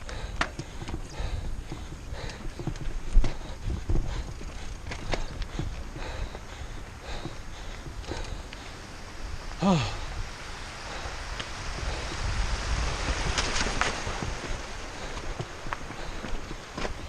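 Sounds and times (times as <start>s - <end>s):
bike rattling over rocks: 0.0s - 10.0s, 10.9s - 17.0s
wind rushing over microphone: 0.0s - 17.0s.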